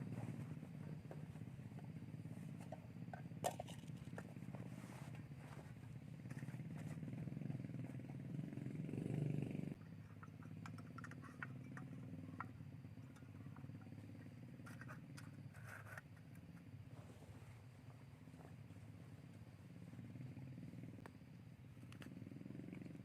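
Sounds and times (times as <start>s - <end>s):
small engine running: 5.5s - 16.0s.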